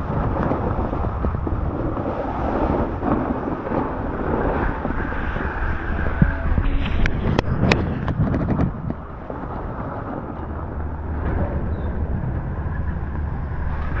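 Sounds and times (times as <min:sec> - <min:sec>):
snowboard sliding on snow: 0:00.0 - 0:06.4
wind on microphone: 0:00.0 - 0:14.0.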